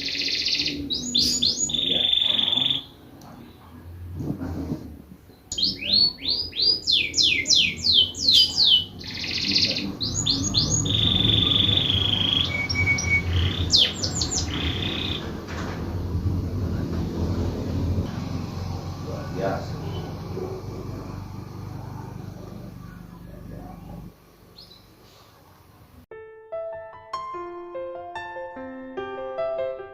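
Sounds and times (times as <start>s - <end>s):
bird chirping loudly: 0.0s - 3.0s, 5.5s - 15.4s, 24.6s - 25.0s
low steady rumble: 13.2s - 24.6s.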